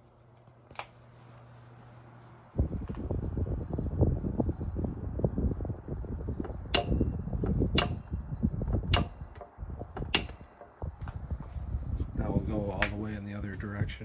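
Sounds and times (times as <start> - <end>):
table fan humming: 0.0 - 14.0
fan oscillation mechanism clicks: 0.1 - 1.5, 2.6 - 3.7, 5.3 - 13.6.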